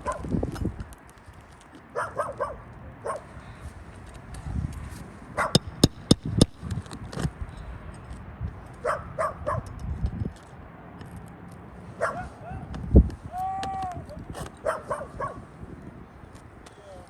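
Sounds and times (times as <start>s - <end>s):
dog barking in sharp yips: 0.0s - 0.3s, 1.9s - 3.3s, 5.4s - 5.6s, 8.8s - 9.7s, 12.0s - 12.7s, 14.6s - 15.5s
sharp knocks: 5.5s - 6.8s.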